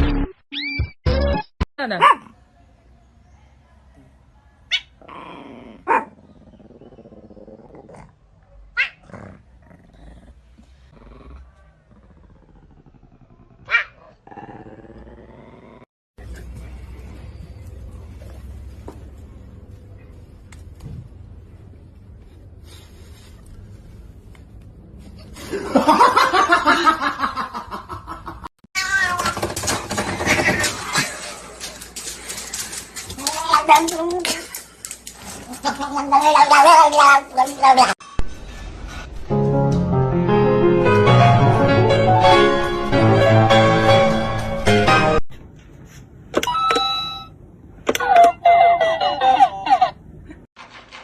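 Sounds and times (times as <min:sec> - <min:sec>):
dog barking: 0:02.0 - 0:02.4, 0:05.8 - 0:06.2, 0:13.7 - 0:14.0
dog growling: 0:05.0 - 0:08.2, 0:09.0 - 0:15.9.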